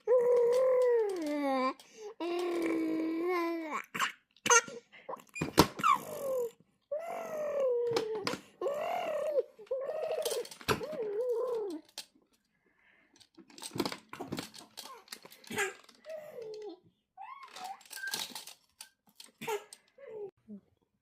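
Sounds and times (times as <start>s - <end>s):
baby babbling: 0.0s - 4.1s, 5.8s - 11.8s.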